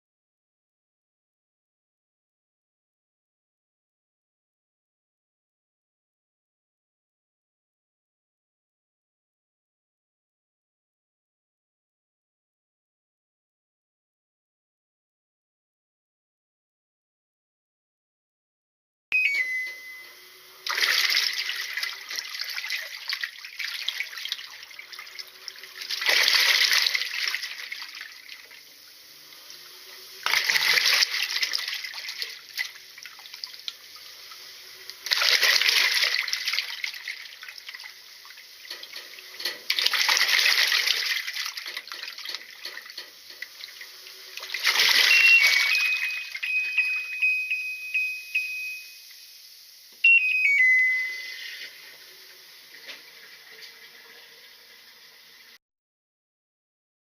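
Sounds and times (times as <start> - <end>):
thin high tone: 19.1 - 22.1, 44.8 - 52.5
faint hum: 19.2 - 39.6
washing machine churning water: 20.5 - 46.3.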